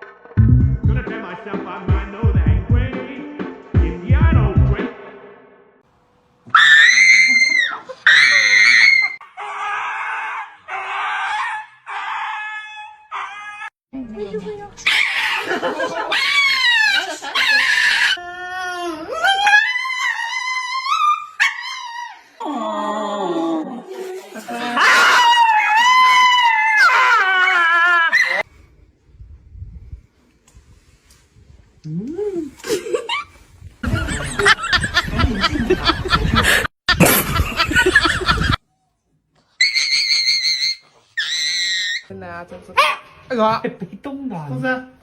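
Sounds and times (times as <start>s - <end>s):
dog howling and whining: 6.5s - 13.8s, 14.9s - 24.0s, 24.6s - 28.5s
people laughing: 15.2s - 18.2s, 24.1s - 25.0s, 32.6s - 38.6s.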